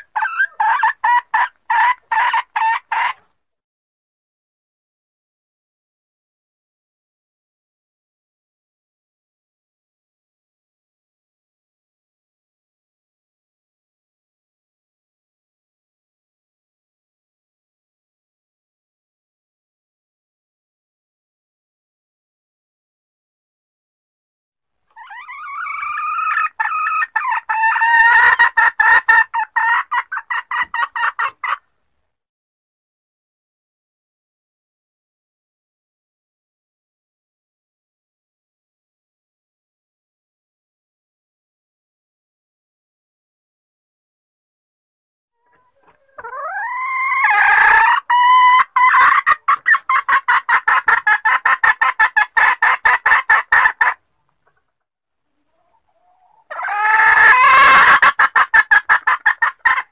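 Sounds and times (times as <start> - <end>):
hen clucking: 0.0 - 3.3, 24.9 - 31.6, 45.4 - 54.6, 55.4 - 59.9.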